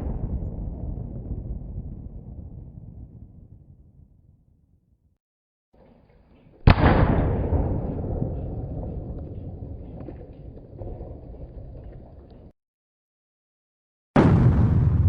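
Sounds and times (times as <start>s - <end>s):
explosion blast: 0.0s - 3.9s, 6.6s - 8.9s, 14.2s - 15.0s.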